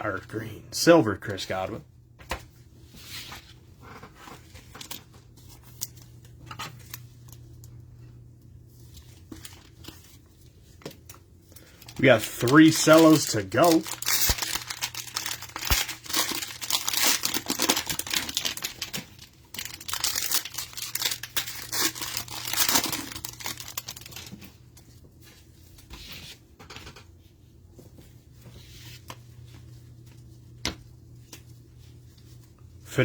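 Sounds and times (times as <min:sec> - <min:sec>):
cellophane tearing and crinkling: 0:11.6 - 0:24.5.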